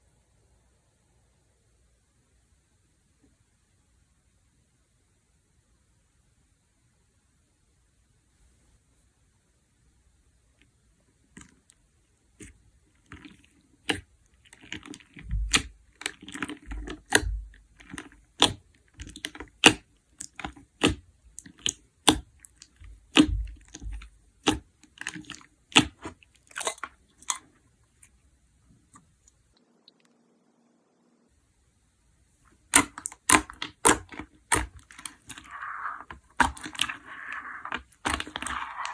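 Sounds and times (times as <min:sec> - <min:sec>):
slime squishing: 0:12.4 - 0:28.2, 0:32.6 - 0:38.9
slime popping clicks: 0:32.7 - 0:35.4.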